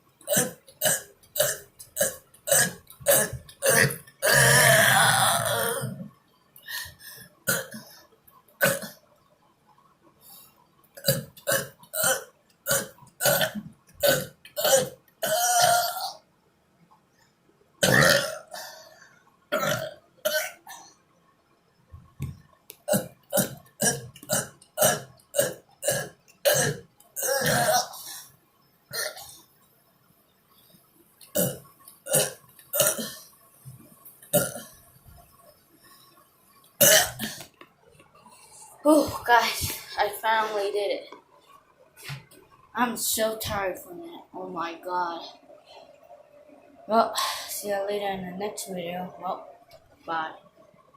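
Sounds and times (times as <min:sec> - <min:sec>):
man burping: 0:00.3 - 0:06.1, 0:07.5 - 0:07.9, 0:11.0 - 0:16.2, 0:17.8 - 0:18.7, 0:19.5 - 0:20.8, 0:22.9 - 0:28.2, 0:28.9 - 0:29.4, 0:31.3 - 0:33.3, 0:34.3 - 0:34.7, 0:36.8 - 0:37.5.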